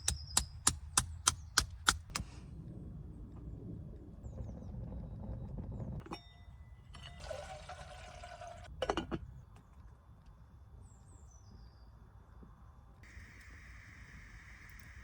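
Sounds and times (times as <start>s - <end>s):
bird chirping: 0.0s - 2.1s
water pouring into a pot: 7.2s - 8.7s.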